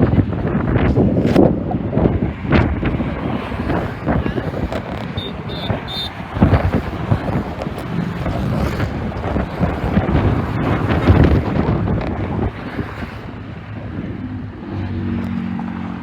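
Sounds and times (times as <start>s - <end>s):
wind buffeting microphone: 0.0s - 16.0s
short high-pitched beeps: 5.0s - 6.2s.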